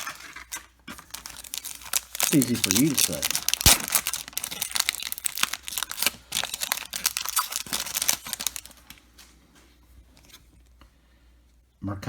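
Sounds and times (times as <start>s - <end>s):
foil wrapper tearing and crinkling: 0.0s - 9.0s.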